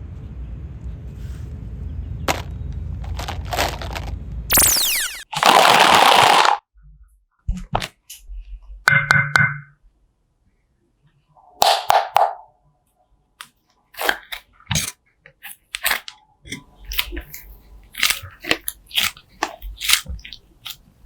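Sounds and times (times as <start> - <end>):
slime crackling and popping: 3.7 - 6.6, 15.4 - 16.1, 16.9 - 20.8.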